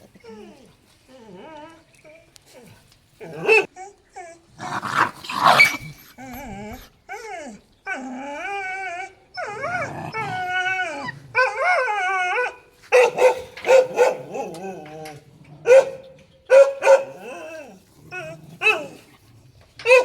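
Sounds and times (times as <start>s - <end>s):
dog barking and yelping: 3.2s - 3.7s, 4.6s - 7.3s, 8.6s - 14.9s, 15.6s - 19.1s, 19.8s - 20.0s
dog whining: 3.2s - 19.0s.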